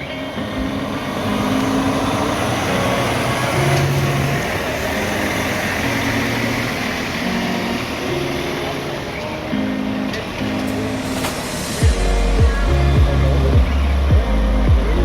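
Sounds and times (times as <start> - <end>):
truck diesel engine running: 10.7 - 15.0.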